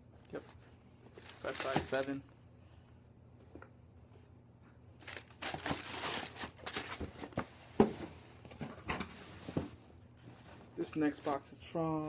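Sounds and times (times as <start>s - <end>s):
paper and cardboard rustling: 1.1s - 2.2s, 5.0s - 11.4s.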